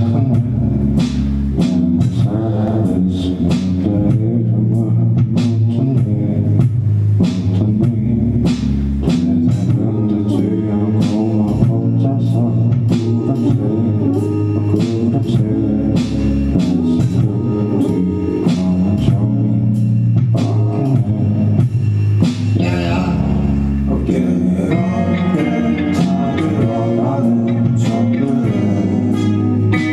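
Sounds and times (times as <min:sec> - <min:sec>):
band music: 0:00.0 - 0:29.9
drum beat: 0:05.2 - 0:10.2.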